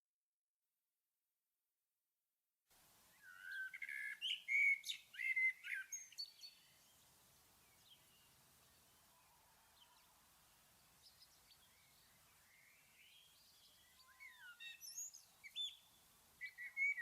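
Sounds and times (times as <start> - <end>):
light hiss: 2.7 - 17.0
songbird warbling: 3.1 - 6.9, 10.9 - 17.0
faint bird chirps: 3.1 - 17.0.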